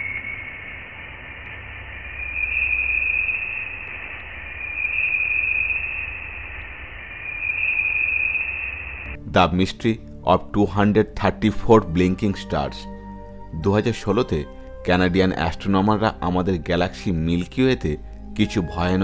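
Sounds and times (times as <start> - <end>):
hissing hum: 0.0 - 9.2
low rumble: 0.0 - 9.2.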